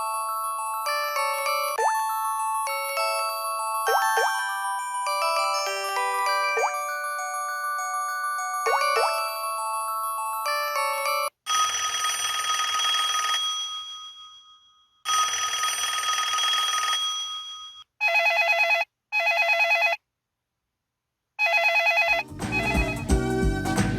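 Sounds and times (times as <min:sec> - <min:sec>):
melody ringtone: 0:00.0 - 0:11.3, 0:22.2 - 0:23.6
trilling telephone bell ring: 0:00.0 - 0:18.4.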